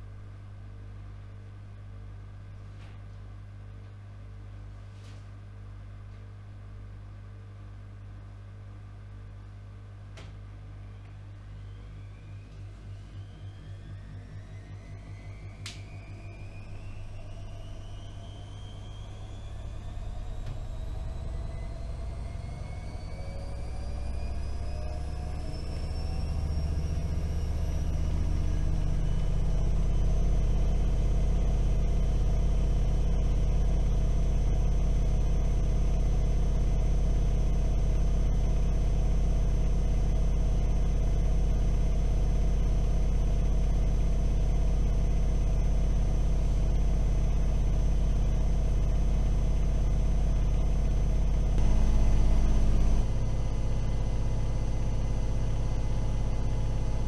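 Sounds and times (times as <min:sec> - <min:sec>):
washing machine spinning: 0:10.2 - 0:57.0.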